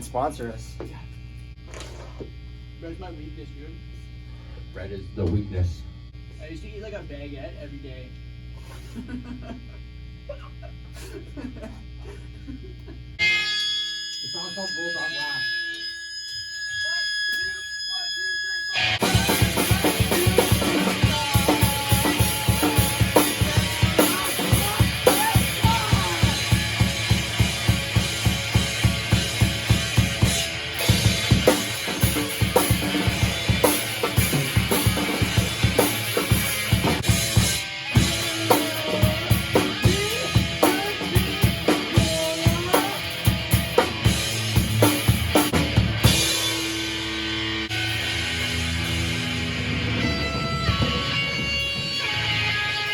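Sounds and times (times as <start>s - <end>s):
rock band playing: 13.2s - 17.8s, 18.7s - 52.9s
guitar chord ringing: 13.2s - 52.9s
drum kit beat: 19.0s - 52.9s.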